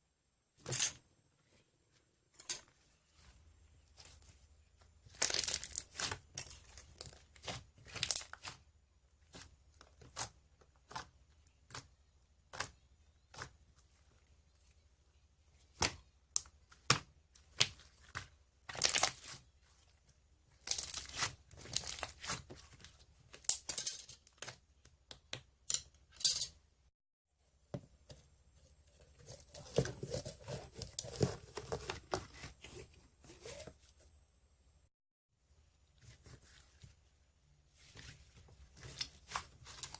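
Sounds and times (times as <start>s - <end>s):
slime squishing and crackling: 20.6s - 22.8s.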